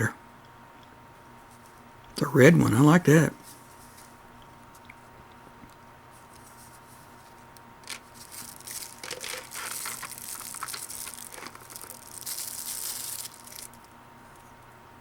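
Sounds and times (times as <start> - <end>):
packaging crinkling and rustling: 6.4 - 13.9.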